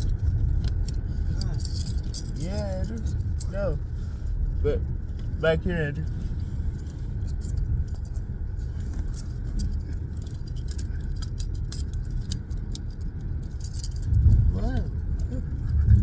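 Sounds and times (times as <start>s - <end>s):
handcuffs clicking and jingling: 0.0s - 3.6s, 7.2s - 16.0s
car cabin road rumble: 0.0s - 16.0s.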